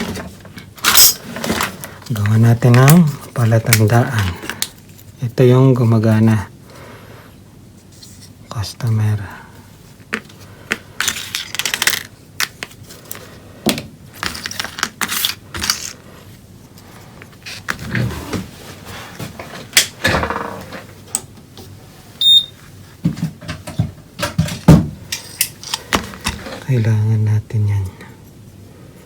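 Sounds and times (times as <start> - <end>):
high beep: 22.2 - 22.6.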